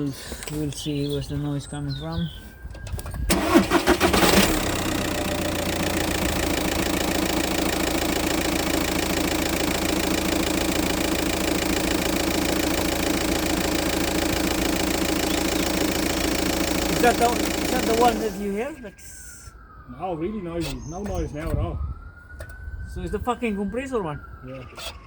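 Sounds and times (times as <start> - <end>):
car engine idling: 3.3 - 18.8.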